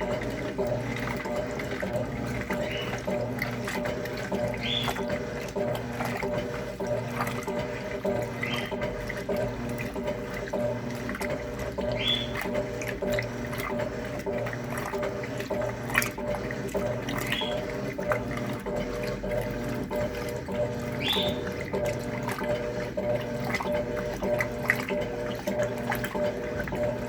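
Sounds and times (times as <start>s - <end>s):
washing machine motor hum: 0.0s - 27.0s
water sloshing in washing machine: 0.0s - 27.0s.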